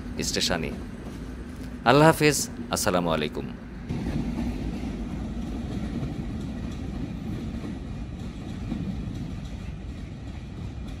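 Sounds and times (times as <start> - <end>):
train carriages rumbling: 0.0 - 11.0
train wheels clicking: 3.8 - 11.0.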